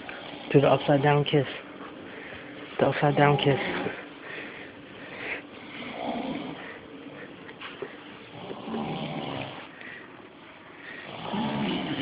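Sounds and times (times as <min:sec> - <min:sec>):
snoring: 0:05.7 - 0:06.6, 0:08.3 - 0:09.7, 0:11.0 - 0:12.0.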